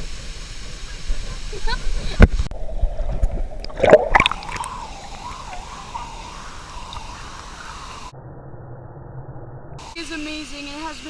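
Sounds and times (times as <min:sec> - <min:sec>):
rush of falling water: 0:00.0 - 0:02.5, 0:03.9 - 0:08.1
water splashing and gurgling: 0:00.2 - 0:08.1.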